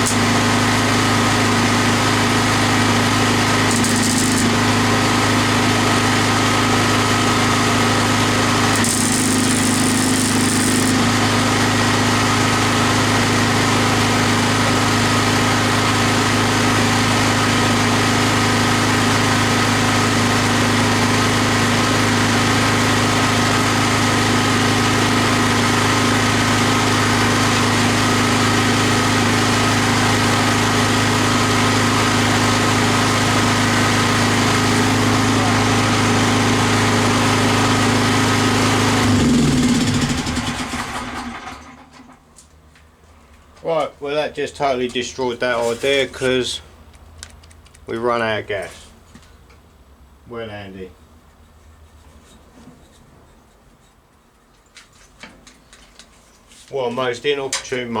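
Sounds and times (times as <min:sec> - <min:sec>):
mechanical drone: 0:03.5 - 0:04.8, 0:08.5 - 0:11.5.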